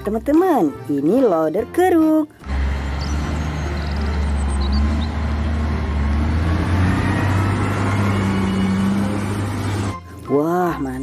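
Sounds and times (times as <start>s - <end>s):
vehicle engine rumbling: 2.4s - 10.3s.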